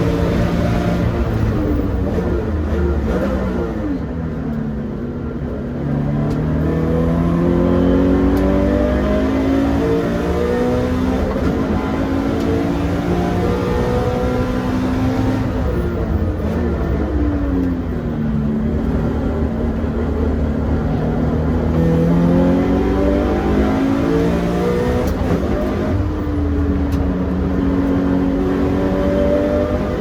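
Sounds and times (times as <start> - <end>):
race car engine revving: 0.0 - 4.1, 5.8 - 30.0.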